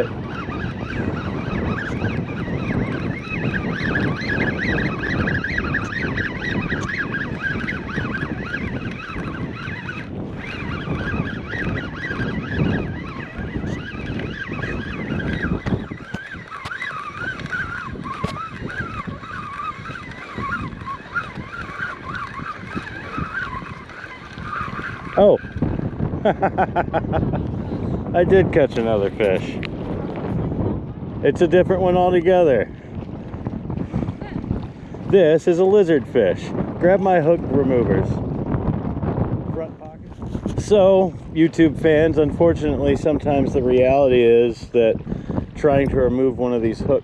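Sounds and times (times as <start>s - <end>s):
wavering whine: 0.0s - 26.9s
wind buffeting microphone: 0.0s - 47.0s.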